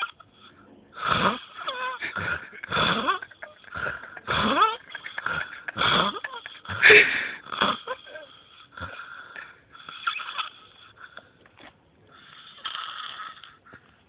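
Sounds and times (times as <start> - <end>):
man breathing weakly: 0.4 - 10.0
man snoring loudly: 1.0 - 9.1.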